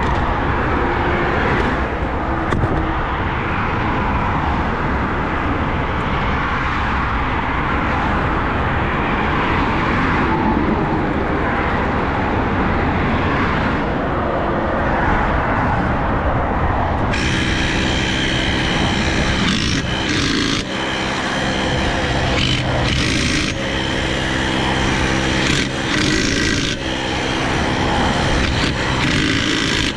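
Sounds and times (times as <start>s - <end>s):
road and engine noise: 0.0s - 29.9s
multi-tone hum: 17.0s - 29.9s.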